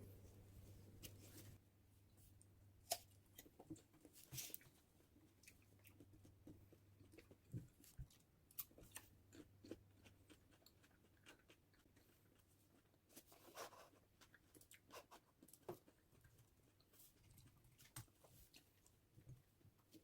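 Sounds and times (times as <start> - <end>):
soft rustle: 0.0 - 1.6.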